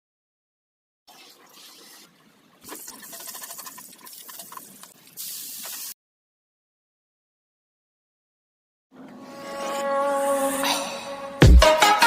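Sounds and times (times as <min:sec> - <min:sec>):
liquid pouring: 0:01.1 - 0:05.9.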